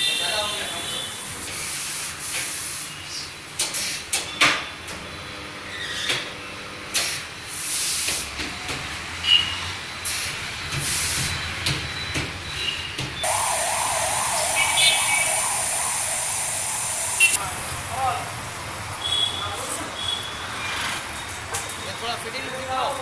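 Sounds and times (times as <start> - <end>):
air hissing: 13.2 - 17.4.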